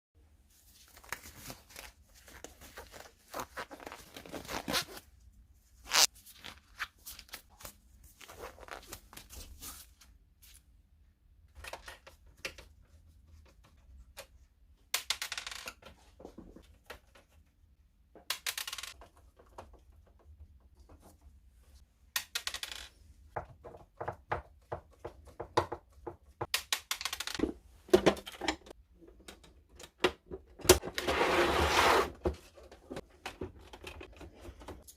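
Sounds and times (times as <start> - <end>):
plastic parts clicking and clattering: 11.5 - 17.5, 18.1 - 21.2, 22.1 - 31.0, 32.5 - 34.9.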